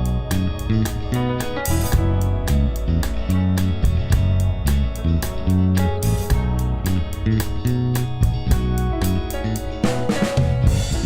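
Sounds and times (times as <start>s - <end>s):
bass line: 0.0s - 11.0s
funk guitar: 0.0s - 11.0s
steady drum beat: 0.0s - 11.0s.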